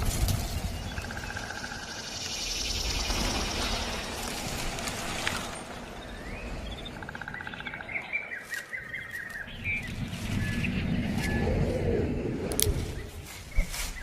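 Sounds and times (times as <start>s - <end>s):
birds chirping and trilling: 0.0s - 14.0s
steady low rumble: 0.0s - 14.0s.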